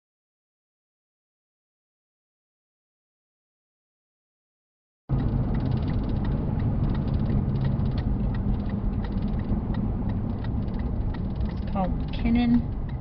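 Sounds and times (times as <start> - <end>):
vehicle engine running: 5.1 - 13.0.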